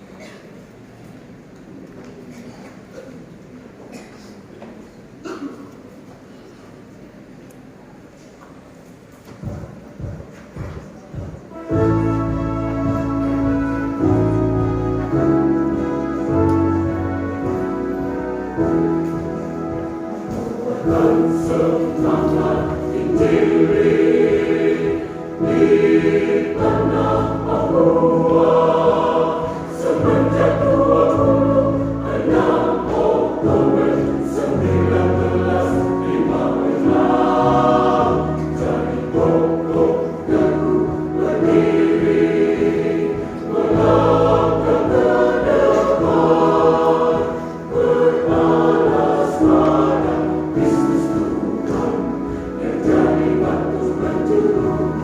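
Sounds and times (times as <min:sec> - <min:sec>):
church choir singing a hymn: 0:11.2 - 0:55.0.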